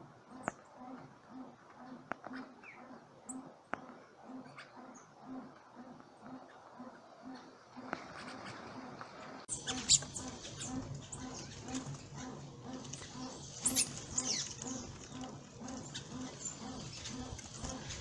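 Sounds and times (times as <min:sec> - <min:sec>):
small birds chirping: 0:00.2 - 0:18.0
steady low pulse: 0:08.8 - 0:18.0.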